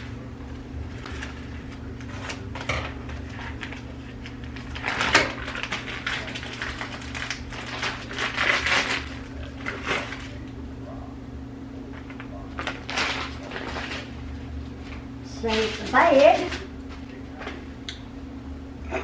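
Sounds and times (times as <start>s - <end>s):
plastic bag crinkling: 0.8s - 10.4s, 11.9s - 17.6s.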